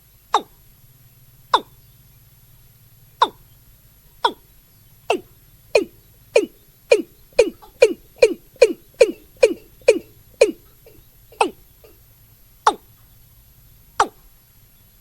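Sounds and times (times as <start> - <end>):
bird calling short sharp notes: 0.3 - 0.6, 1.5 - 1.8, 3.2 - 3.5, 4.2 - 12.0, 12.6 - 13.0, 14.0 - 14.3.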